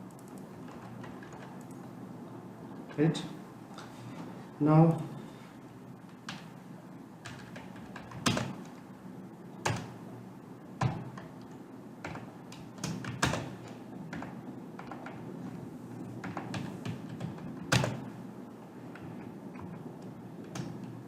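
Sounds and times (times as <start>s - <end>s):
keyboard and mouse clicks: 0.0s - 1.8s
low room hum: 0.0s - 21.0s.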